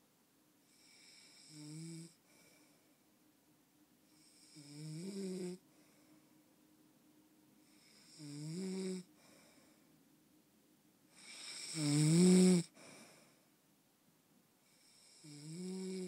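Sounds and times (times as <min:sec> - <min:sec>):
person snoring: 0:00.7 - 0:02.2, 0:04.2 - 0:05.6, 0:07.7 - 0:09.1, 0:11.2 - 0:12.7, 0:14.8 - 0:16.0.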